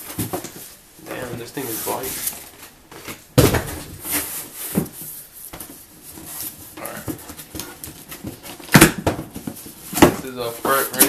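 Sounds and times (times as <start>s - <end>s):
packaging scrapes and rustles: 1.1s - 3.2s, 9.5s - 11.0s.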